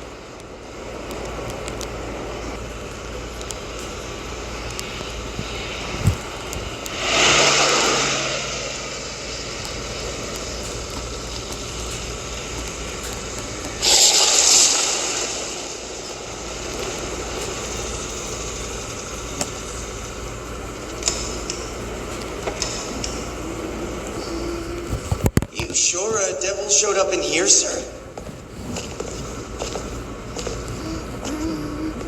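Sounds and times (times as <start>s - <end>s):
rushing swells: 0.0s - 25.1s
vehicle-like rumble: 0.0s - 25.4s.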